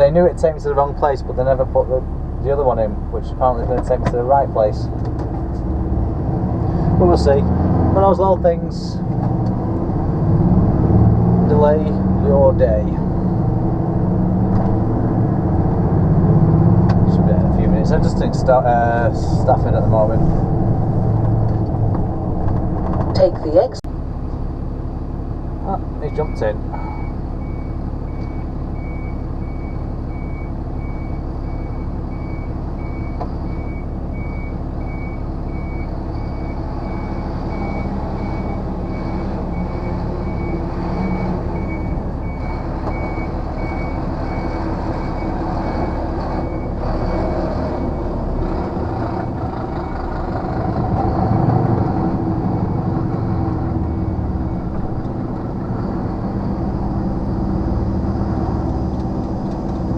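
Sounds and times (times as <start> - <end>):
lorry engine running: 0.0 - 59.9
reversing alarm beeping: 26.1 - 47.2.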